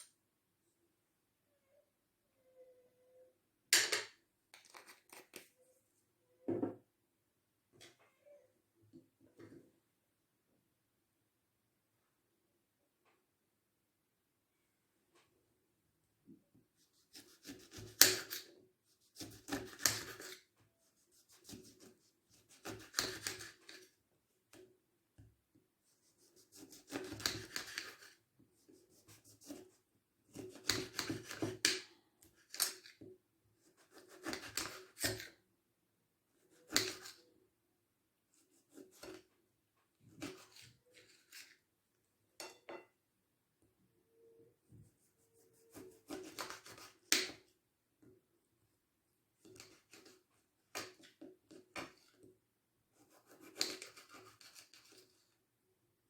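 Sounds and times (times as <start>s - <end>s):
kitchen scraping and rubbing: 16.8s - 24.0s, 26.0s - 31.7s, 40.1s - 41.6s.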